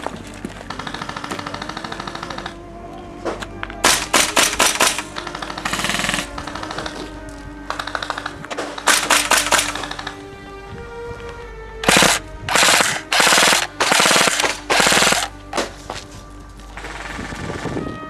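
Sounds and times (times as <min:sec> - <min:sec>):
background music: 0:00.0 - 0:18.0
airsoft guns firing: 0:00.7 - 0:02.6, 0:03.8 - 0:07.1, 0:07.7 - 0:10.2, 0:11.8 - 0:16.0.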